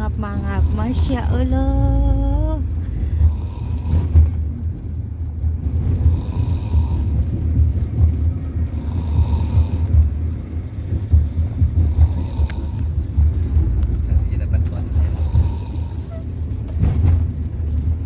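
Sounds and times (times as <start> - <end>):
steady low rumble: 0.0 - 18.0
child snoring: 0.2 - 1.3, 3.1 - 4.4, 5.9 - 7.4, 8.7 - 10.0, 11.8 - 13.0, 15.0 - 16.2.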